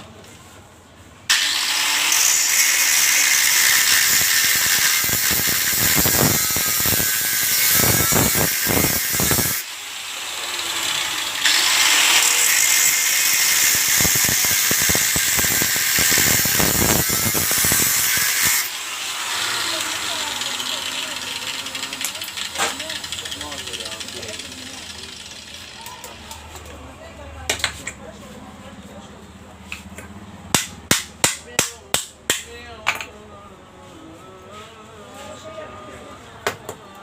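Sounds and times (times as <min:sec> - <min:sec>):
angle grinder cutting metal: 0:01.3 - 0:26.2
grinder disc rattling on metal: 0:10.7 - 0:26.2.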